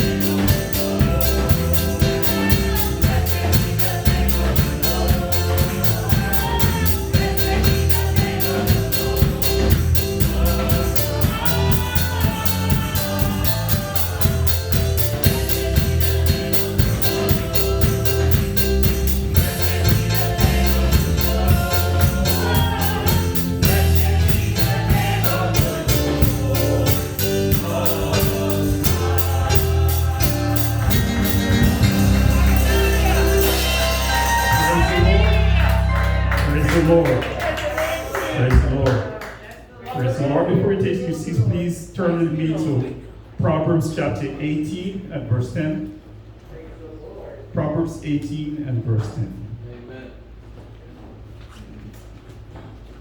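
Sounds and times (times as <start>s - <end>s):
gospel singing with band: 0.0s - 41.5s.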